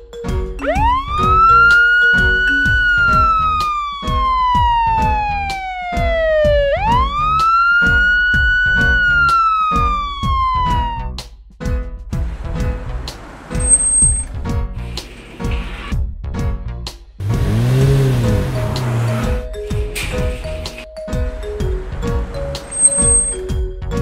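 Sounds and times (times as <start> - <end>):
siren wailing: 0.6 - 11.2, 22.7 - 23.4.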